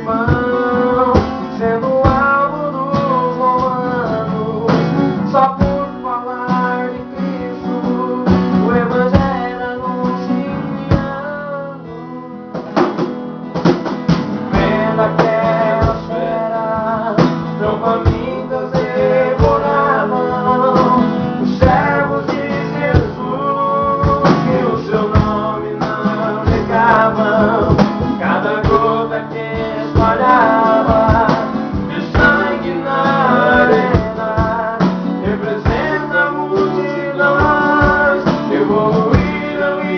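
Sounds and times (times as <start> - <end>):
guitar accompaniment: 0.0 - 39.9
hymn singing: 14.3 - 39.9.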